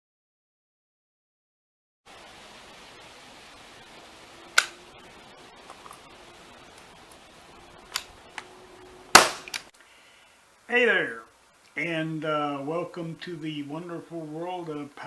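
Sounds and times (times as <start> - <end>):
faint steady hiss: 2.1 - 15.0
sharp clicks: 4.6 - 4.8.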